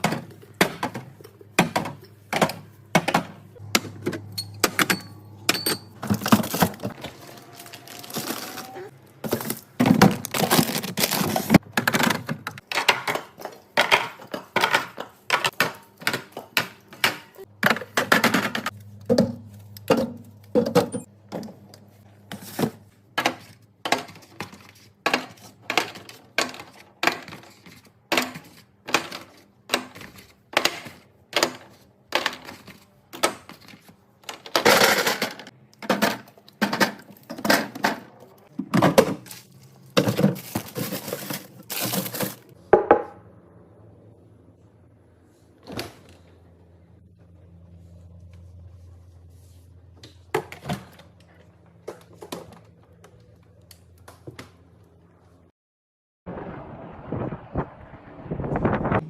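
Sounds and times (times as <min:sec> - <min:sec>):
containers clinking in a refrigerator: 0:00.0 - 0:43.2.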